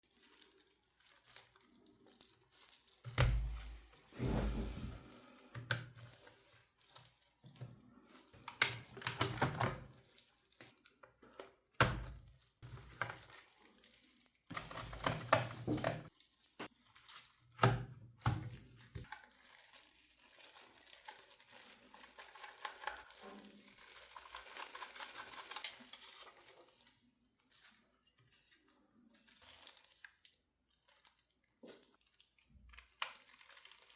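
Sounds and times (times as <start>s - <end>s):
scraping and rustling: 3.7s - 5.2s.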